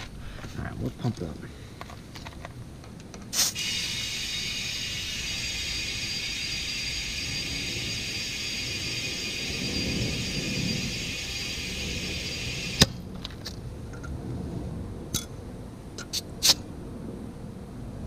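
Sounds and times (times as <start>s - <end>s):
compressed air hissing: 3.3s - 12.9s.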